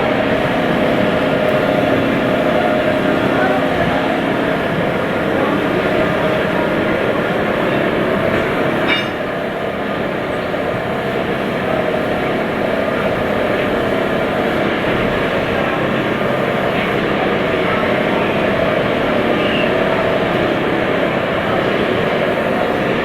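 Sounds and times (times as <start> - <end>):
lathe running: 0.0 - 23.0
high-pitched metallic ring: 8.9 - 9.2.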